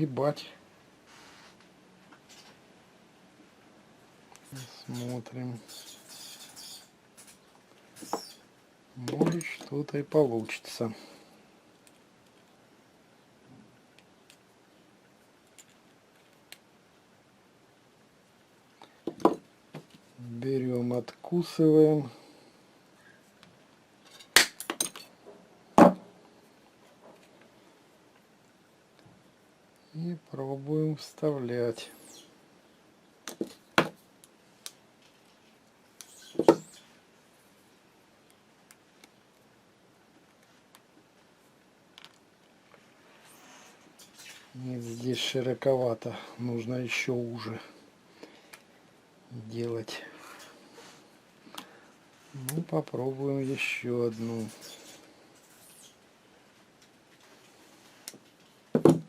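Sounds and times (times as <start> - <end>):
brief metal scrape: 5.7 - 6.9.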